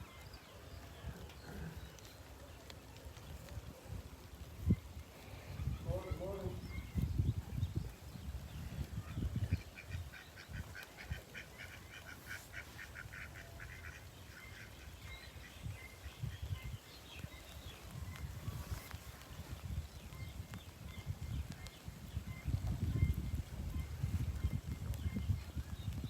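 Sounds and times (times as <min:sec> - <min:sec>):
birds calling: 0:00.0 - 0:19.8
wind rumble on microphone: 0:00.0 - 0:26.0.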